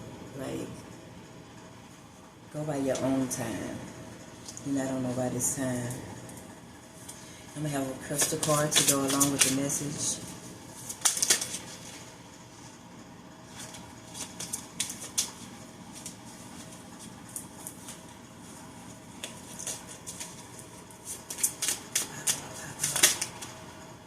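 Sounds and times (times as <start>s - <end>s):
cards clicking and snapping: 8.2s - 9.6s, 10.9s - 11.7s, 21.1s - 23.5s.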